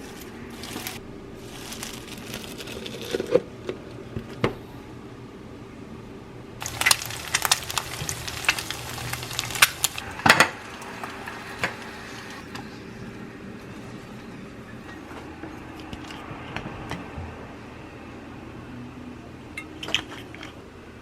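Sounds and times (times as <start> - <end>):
crackling hiss: 0.0 - 3.4, 6.6 - 16.5
utensil knocking cookware: 6.6 - 12.7.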